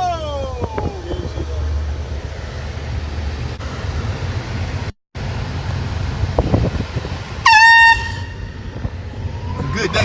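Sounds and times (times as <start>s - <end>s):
wind on microphone: 6.2s - 7.4s
air horn blasting: 7.4s - 8.6s.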